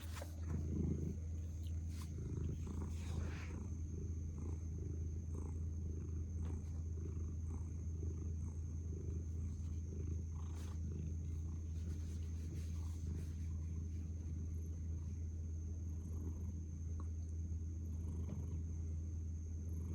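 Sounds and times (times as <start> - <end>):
cat snoring: 0.0 - 14.6, 17.9 - 18.6.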